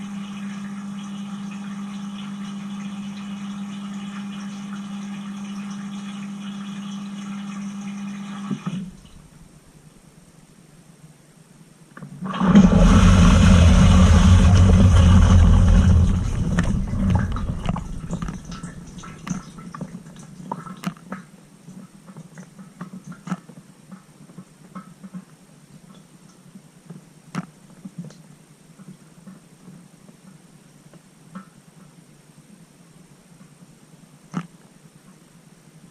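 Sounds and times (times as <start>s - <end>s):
dishwasher water rushing: 12.2s - 20.2s
water drips and trickles: 12.2s - 24.1s.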